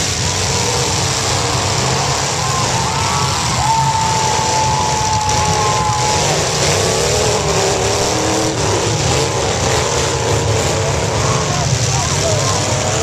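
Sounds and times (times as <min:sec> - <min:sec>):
car engines revving: 0:00.0 - 0:13.0.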